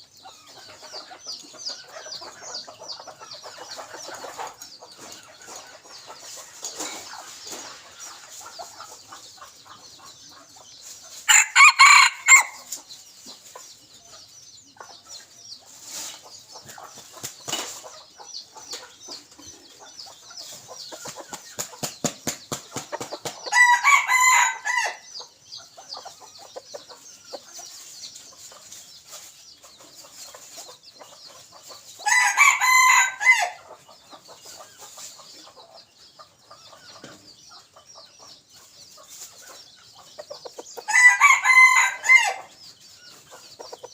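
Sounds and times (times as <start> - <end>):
rooster crowing: 11.3 - 12.6, 23.5 - 25.0, 32.1 - 33.6, 40.9 - 42.5.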